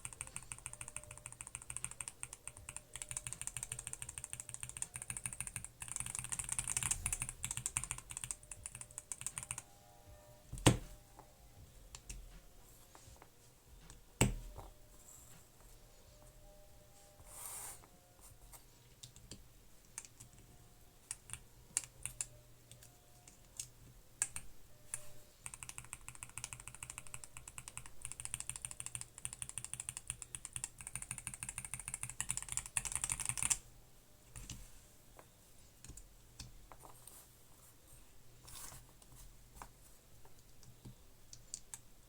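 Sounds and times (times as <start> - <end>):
typing on mechanical keyboard: 0.0 - 9.7, 21.0 - 33.6.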